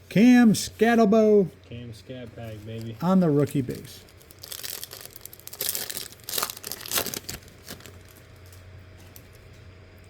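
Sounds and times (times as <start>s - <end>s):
faint steady hum: 0.0s - 10.0s
foil wrapper crinkling: 2.3s - 9.4s.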